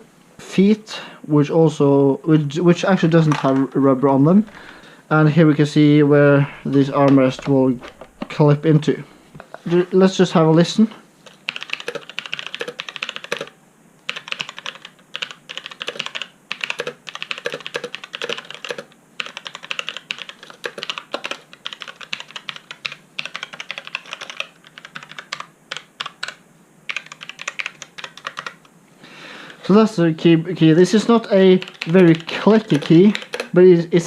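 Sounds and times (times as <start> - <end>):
mechanical keyboard key clacks: 31.6 - 33.5.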